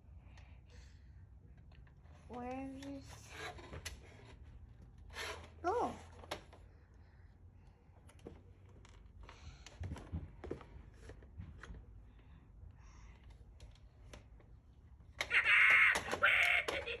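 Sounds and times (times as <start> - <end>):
low room hum: 0.0 - 17.0
plastic toy pieces clicking: 15.1 - 17.0.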